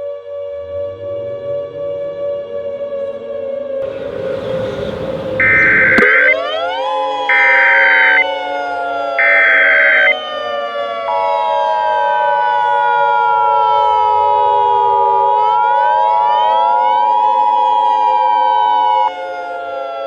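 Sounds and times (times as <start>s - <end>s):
wailing siren: 3.8s - 10.4s
buzzing alert data burst: 3.9s - 6.3s
two-tone alert attention signal: 5.4s - 6.4s.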